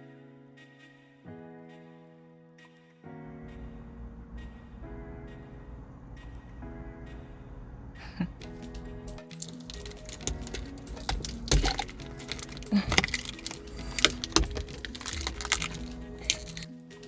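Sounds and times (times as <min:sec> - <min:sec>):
background music: 0:00.0 - 0:17.0
plastic clicks and knocks: 0:08.2 - 0:16.7.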